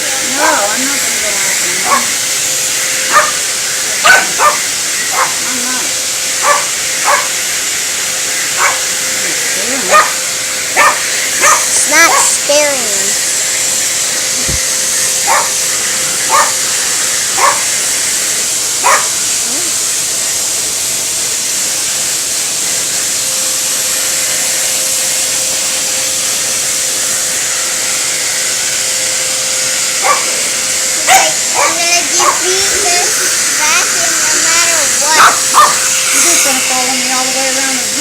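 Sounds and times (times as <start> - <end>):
vacuum cleaner running: 0.0 - 38.0
dog barking: 1.8 - 2.2, 3.1 - 5.6, 6.4 - 7.4, 8.6 - 8.9, 9.9 - 10.2, 10.8 - 12.4, 15.2 - 15.6, 16.3 - 16.6, 17.4 - 17.7, 18.8 - 19.2, 30.0 - 30.4, 31.0 - 32.5, 35.2 - 35.9.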